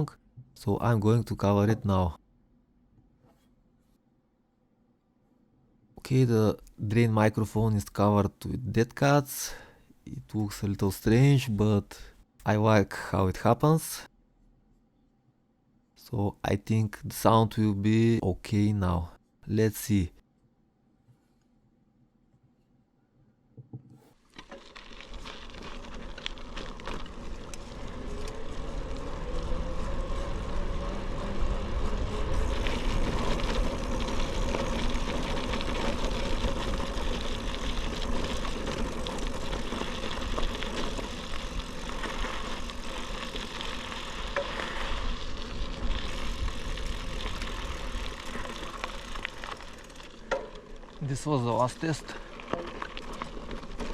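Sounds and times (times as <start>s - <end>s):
bicycle tyres rolling: 24.1s - 53.9s
bike rattling: 24.2s - 53.9s.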